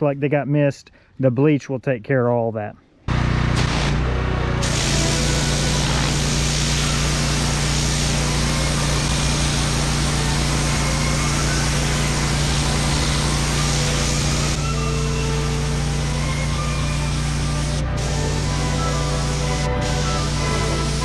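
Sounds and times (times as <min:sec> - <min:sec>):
pressure washer engine running: 0:03.1 - 0:21.0
water jet spraying on concrete: 0:04.6 - 0:21.0.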